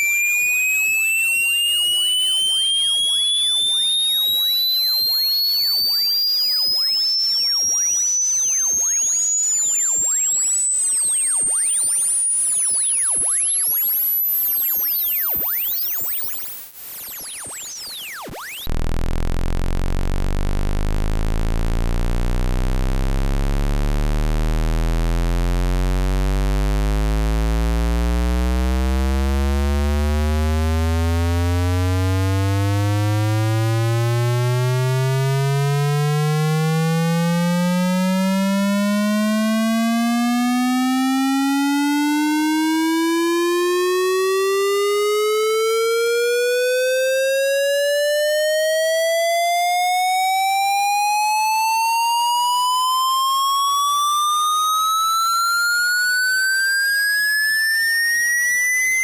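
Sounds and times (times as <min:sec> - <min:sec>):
sweeping electronic chirp tones: 0:00.0 - 0:18.7
synthesized buzzy tone rising: 0:00.0 - 0:59.0.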